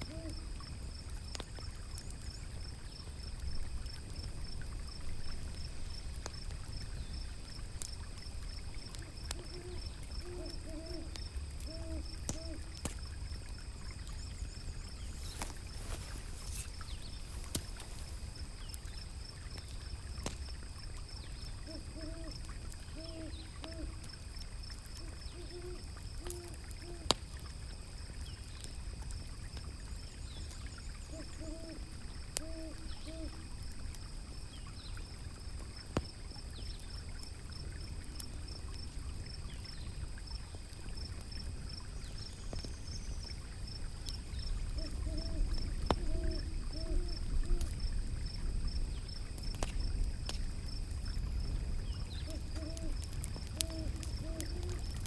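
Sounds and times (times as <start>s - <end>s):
owl hooting: 0.0s - 0.4s, 9.4s - 12.7s, 21.6s - 22.4s, 23.0s - 23.9s, 25.0s - 27.1s, 31.1s - 33.4s, 44.8s - 47.7s, 52.1s - 54.8s
insect chirring: 0.0s - 55.0s
wood fire crackles: 0.0s - 55.0s.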